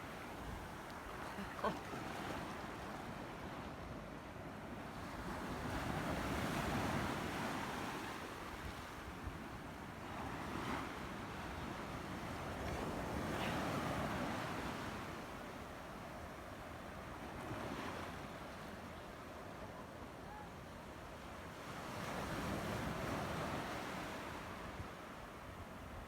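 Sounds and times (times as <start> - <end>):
sea waves breaking: 0.0 - 3.4.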